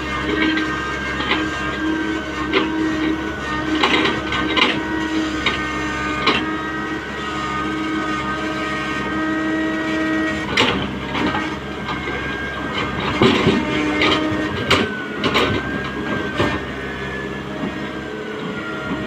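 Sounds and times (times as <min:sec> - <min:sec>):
excavator engine and hydraulic whine: 0:00.0 - 0:19.0.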